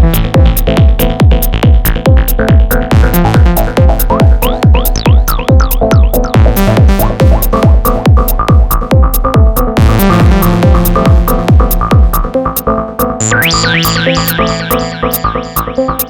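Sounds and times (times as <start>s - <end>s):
techno kick drum: 0.0s - 16.0s
falling synth sweeps: 13.2s - 15.7s
held bass note: 13.2s - 15.8s.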